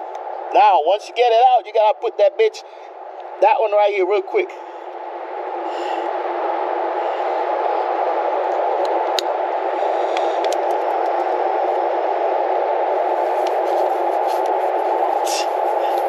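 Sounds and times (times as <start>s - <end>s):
air hissing from tire: 15.2s - 16.0s.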